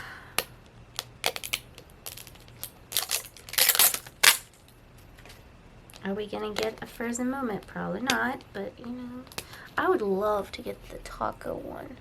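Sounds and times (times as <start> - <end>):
plastic wrapping rustling: 1.0 - 4.6.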